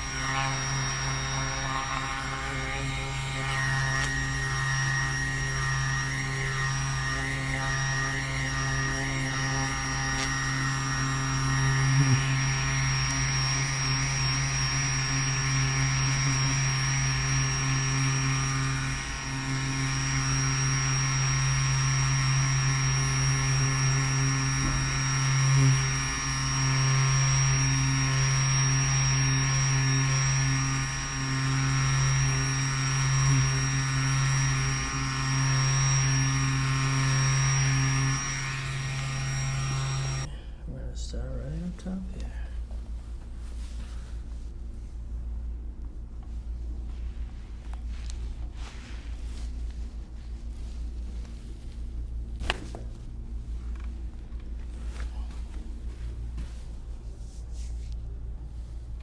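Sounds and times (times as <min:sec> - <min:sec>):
small electric motor humming: 0:00.0 - 0:40.3.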